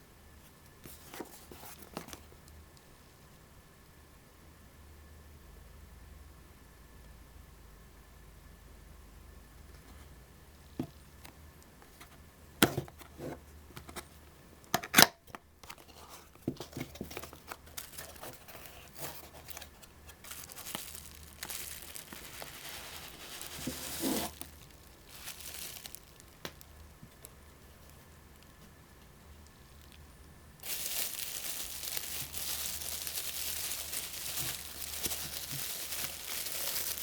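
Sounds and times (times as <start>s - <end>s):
packaging crinkling and tearing: 16.6s - 27.4s, 30.6s - 37.0s.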